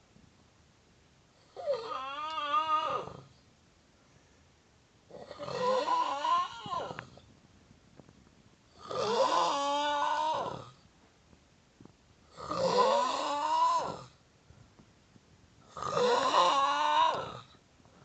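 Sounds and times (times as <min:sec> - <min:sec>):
person snoring: 0:05.1 - 0:07.2, 0:08.7 - 0:10.8, 0:12.3 - 0:14.2, 0:15.7 - 0:17.6.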